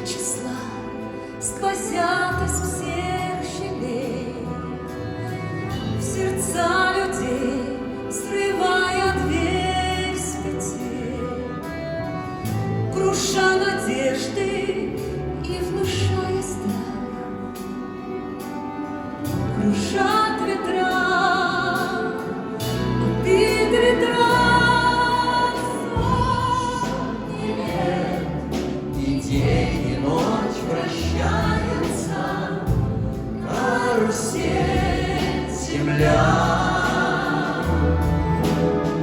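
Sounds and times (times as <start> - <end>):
folk instrument orchestra: 0.0 - 39.0
choir voices: 19.0 - 39.0.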